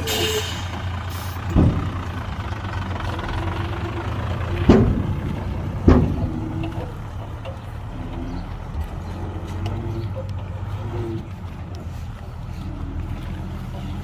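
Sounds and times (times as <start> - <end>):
diesel machinery rumbling: 0.0 - 14.0
sharp heavy knocks: 1.5 - 2.1, 4.6 - 6.6.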